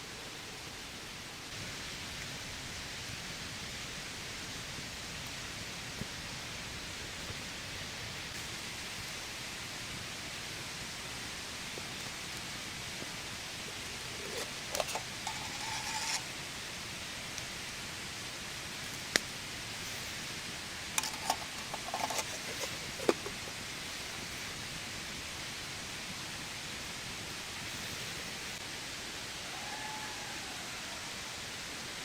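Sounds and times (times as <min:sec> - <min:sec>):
steady rain hiss: 0:00.0 - 0:32.0
clicks and knocks of handling: 0:21.0 - 0:23.4.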